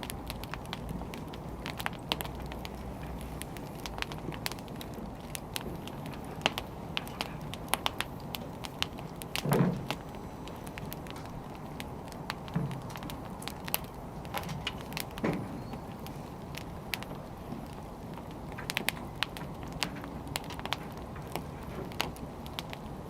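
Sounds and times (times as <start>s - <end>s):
firewood crackling and popping: 0.0s - 23.0s
low fire rumble: 0.0s - 23.0s.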